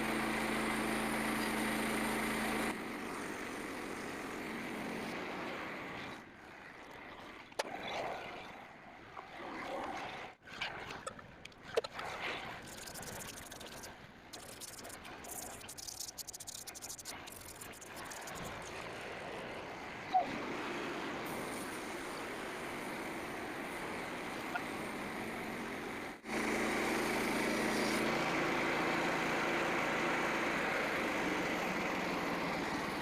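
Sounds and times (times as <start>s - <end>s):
gasoline engine running: 0.0s - 5.2s, 21.2s - 33.0s.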